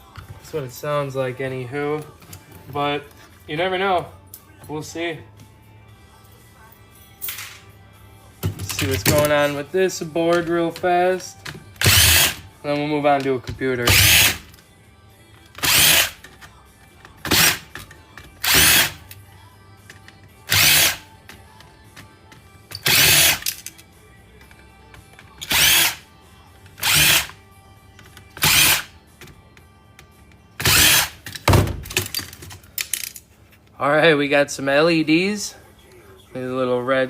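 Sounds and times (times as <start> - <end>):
power drill bursts: 11.8 - 12.4, 13.9 - 14.4, 15.6 - 16.2, 17.3 - 17.6, 18.4 - 19.0, 20.5 - 21.0, 22.8 - 23.4, 25.4 - 26.0, 26.8 - 27.3, 28.4 - 28.9, 30.6 - 31.2.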